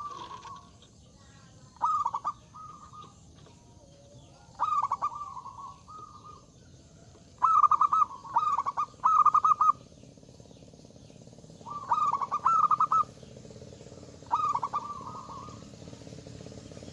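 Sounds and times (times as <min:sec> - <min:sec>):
dove cooing: 0:00.0 - 0:10.2, 0:11.2 - 0:16.9.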